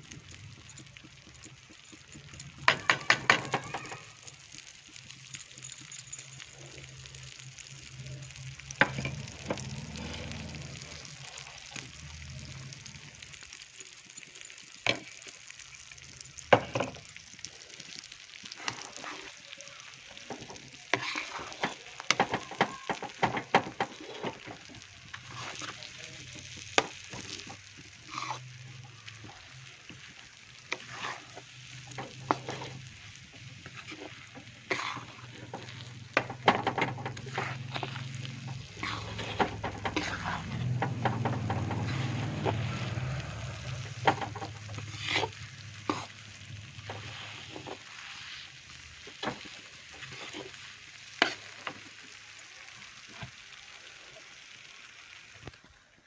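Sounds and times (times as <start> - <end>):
metal spatula scraping a pan: 8.3 - 13.6, 17.8 - 51.8.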